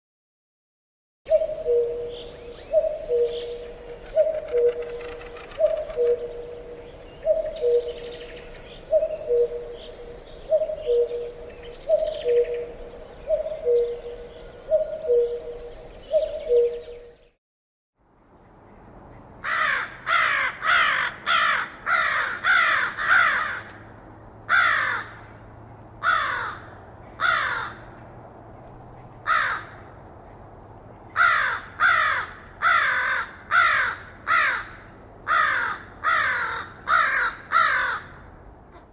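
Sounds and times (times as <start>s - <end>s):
crow cawing: 19.4s - 23.7s, 24.5s - 25.2s, 26.0s - 27.9s, 29.2s - 29.8s, 31.2s - 38.2s.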